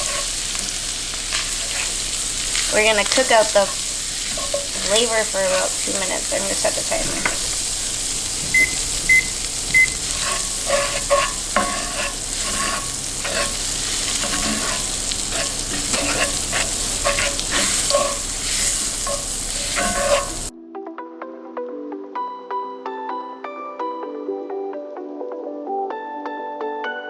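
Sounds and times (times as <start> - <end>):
sizzling in a frying pan: 0.0 - 20.5
utensil stirring and tapping pan: 0.0 - 20.5
kitchen timer beeps: 4.9 - 10.2.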